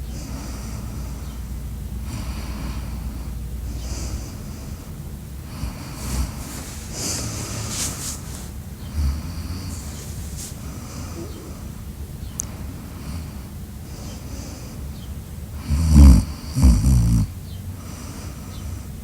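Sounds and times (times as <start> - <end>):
steady low hum: 0.0 - 19.0
person snoring: 8.9 - 10.0, 15.6 - 17.3.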